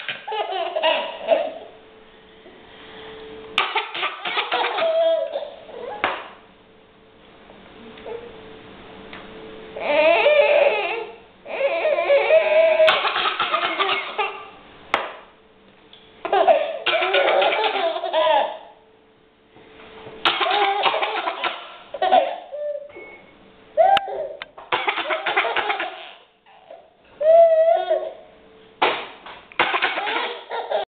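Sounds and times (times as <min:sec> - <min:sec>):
small child laughing: 0:00.0 - 0:01.7, 0:03.6 - 0:06.1, 0:09.8 - 0:14.6, 0:16.2 - 0:18.7, 0:20.2 - 0:22.9, 0:23.8 - 0:28.3, 0:29.6 - 0:30.9.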